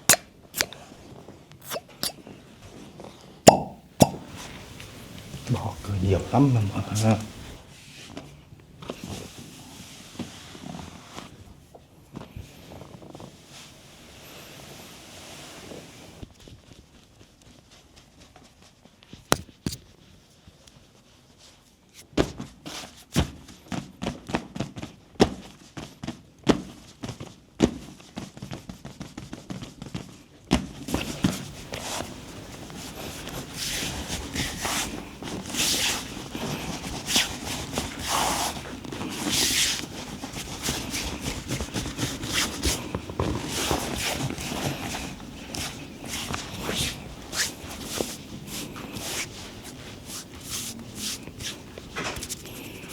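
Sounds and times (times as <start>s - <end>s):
hands rubbing and swishing: 0.0s - 0.8s, 30.9s - 52.9s
hands slapping skin: 0.1s - 0.8s, 3.5s - 4.3s.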